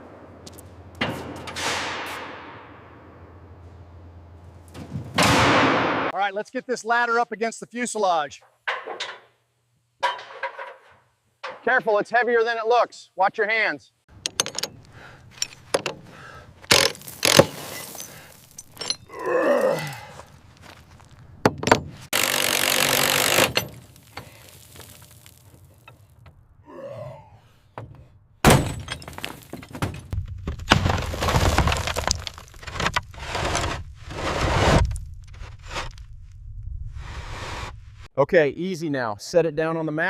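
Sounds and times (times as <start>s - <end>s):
metal parts thunking and scraping: 0.4s - 6.1s, 8.6s - 9.4s, 10.0s - 11.9s, 14.1s - 19.3s, 20.1s - 26.5s, 27.6s - 34.0s
steady rasping noise: 21.9s - 24.3s.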